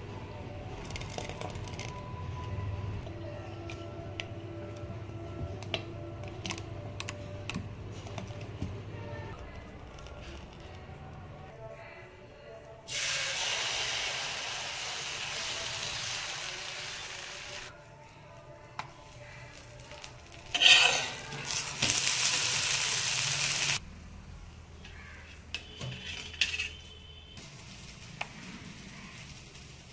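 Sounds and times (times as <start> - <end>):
sizzling on a hot griddle: 12.9 - 17.7, 19.3 - 23.8, 27.4 - 29.9.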